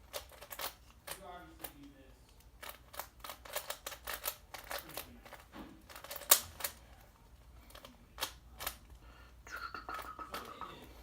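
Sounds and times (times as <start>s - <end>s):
plastic puzzle cube clicking: 0.0s - 1.8s, 2.5s - 6.8s, 7.7s - 8.8s.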